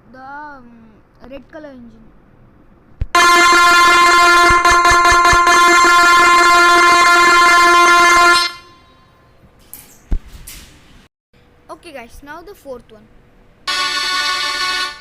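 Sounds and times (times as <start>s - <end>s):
synthesized horn note: 3.2s - 9.1s, 13.7s - 15.0s.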